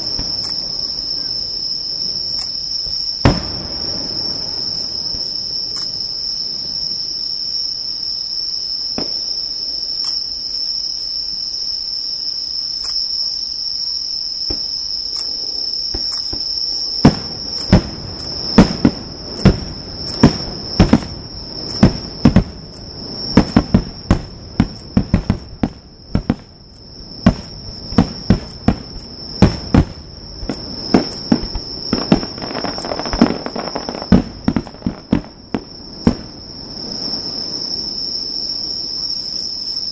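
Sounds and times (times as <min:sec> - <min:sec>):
fireworks bangs: 0:00.0 - 0:02.2, 0:02.8 - 0:06.7, 0:08.9 - 0:09.6, 0:14.5 - 0:37.8
insects trilling: 0:00.0 - 0:39.9.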